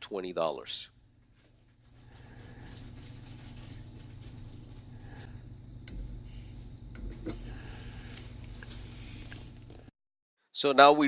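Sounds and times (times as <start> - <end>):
steady low hum: 0.0 - 9.9.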